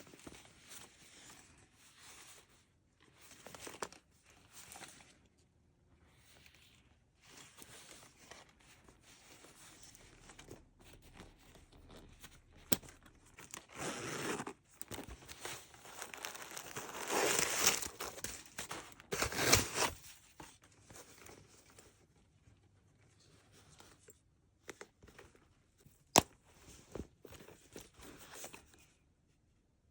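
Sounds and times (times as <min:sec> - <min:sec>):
packaging crinkling and tearing: 0:11.8 - 0:20.0.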